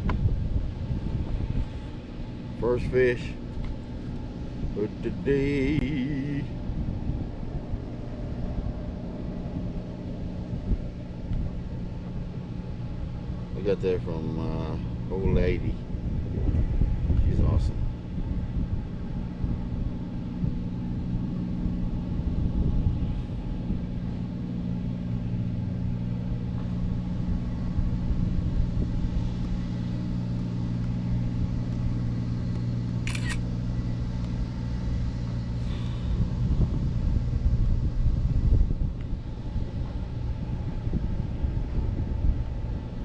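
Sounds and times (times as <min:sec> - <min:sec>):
wind buffeting microphone: 0:00.0 - 0:32.9, 0:33.6 - 0:43.0
low hum: 0:00.0 - 0:43.0
sharp click: 0:32.6 - 0:33.4.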